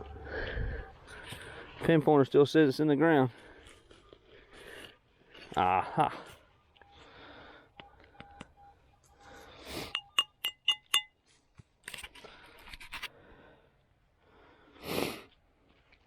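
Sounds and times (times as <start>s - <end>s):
metal detector short beeps: 6.8s - 11.2s
metal clinking on metal: 9.9s - 11.2s.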